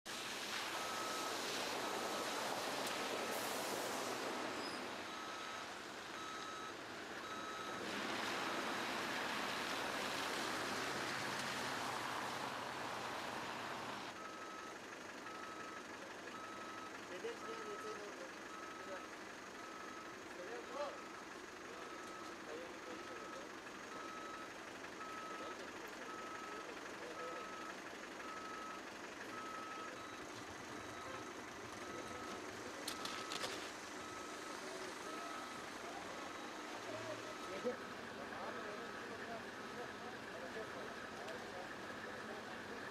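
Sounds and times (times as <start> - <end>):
outdoor background noise: 0.1 - 42.9
vehicle running: 0.1 - 42.9
reversing alarm beeping: 0.8 - 2.3, 4.6 - 7.8, 14.1 - 37.8.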